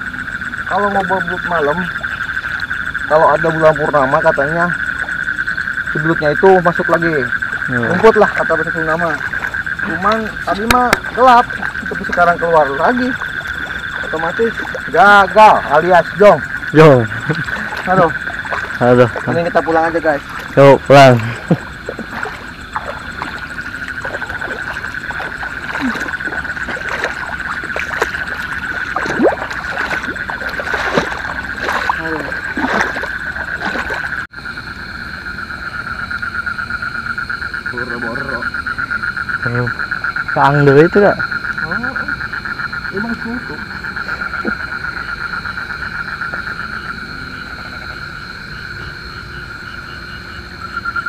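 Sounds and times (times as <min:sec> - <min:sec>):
frogs pulsing trill: 0:00.0 - 0:51.0
high-pitched night insect chorus: 0:00.0 - 0:51.0
footsteps splashing through water and mud: 0:07.3 - 0:15.7, 0:17.1 - 0:34.3.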